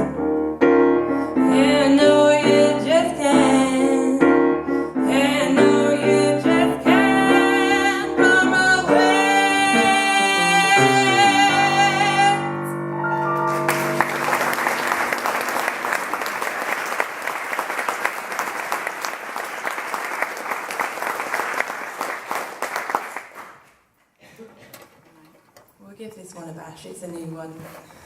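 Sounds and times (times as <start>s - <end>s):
audience applauding: 13.4s - 23.7s.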